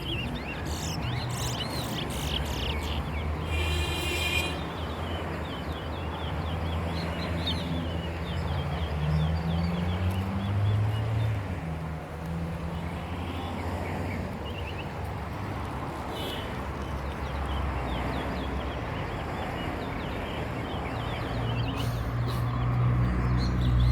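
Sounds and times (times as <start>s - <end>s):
small birds chirping: 0.0s - 11.3s, 16.2s - 23.9s.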